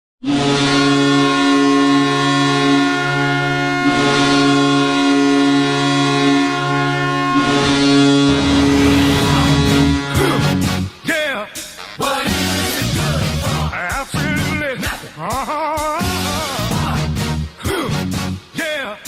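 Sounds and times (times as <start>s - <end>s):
air horn blasts: 0.2s - 11.0s
music: 7.7s - 19.0s.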